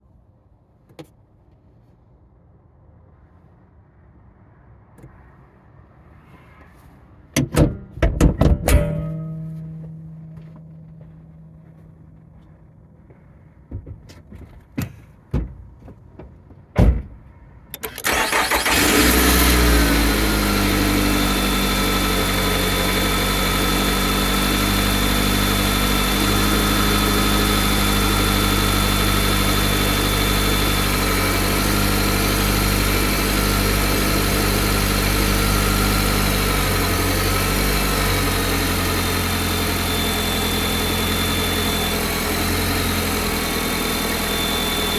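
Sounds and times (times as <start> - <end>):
car engine starting and idling: 7.4 - 13.1, 17.7 - 44.9.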